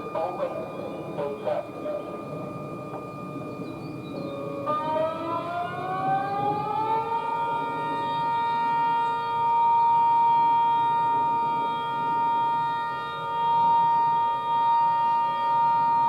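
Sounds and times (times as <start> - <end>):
warning siren wailing: 0.0 - 16.0.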